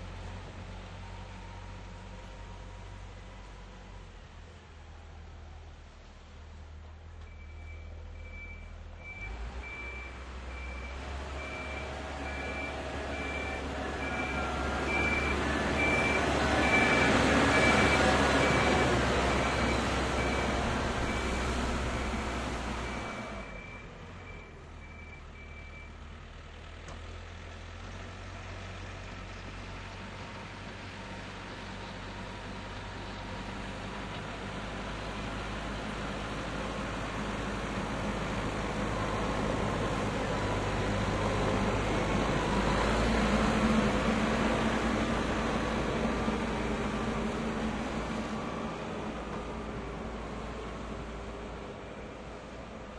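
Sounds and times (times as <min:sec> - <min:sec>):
tractor engine running: 0:09.6 - 0:52.9.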